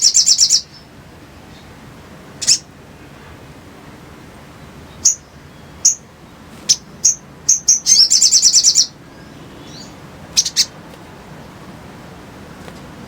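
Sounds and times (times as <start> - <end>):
bird chipping and trilling: 0.0 - 0.9, 2.4 - 2.7, 4.9 - 11.6.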